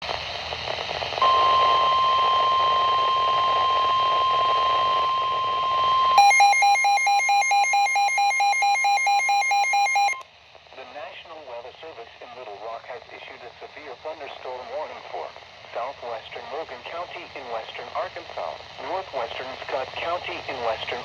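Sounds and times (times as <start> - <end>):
fast pulsing beep: 1.2 - 10.2
high alarm tone: 1.2 - 10.2
radio static: 10.8 - 21.0.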